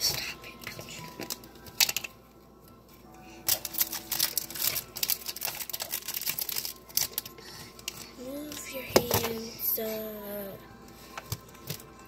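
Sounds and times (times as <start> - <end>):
packaging crinkling and clicking: 0.6 - 2.2, 3.4 - 9.4.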